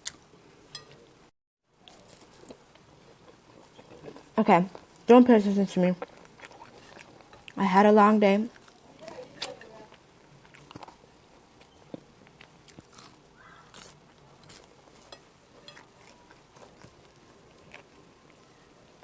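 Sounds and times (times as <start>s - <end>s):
person chewing food: 1.8s - 5.1s, 6.0s - 7.6s, 8.5s - 19.0s.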